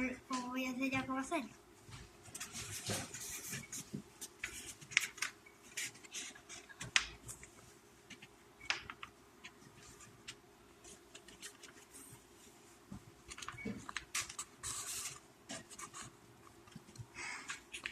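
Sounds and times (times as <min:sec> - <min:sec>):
paper crackling and rustling: 0:02.3 - 0:08.3, 0:08.9 - 0:12.3, 0:13.3 - 0:16.9.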